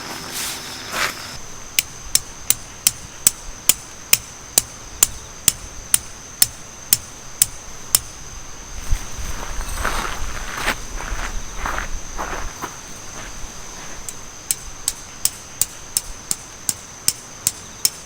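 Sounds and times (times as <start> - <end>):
hammer striking metal stake: 14.5 - 18.0.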